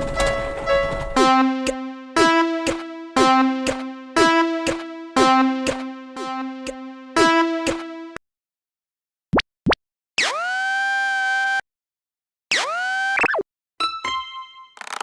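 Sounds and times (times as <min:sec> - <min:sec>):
synthesized level-crossing alarm: 0:01.3 - 0:08.1.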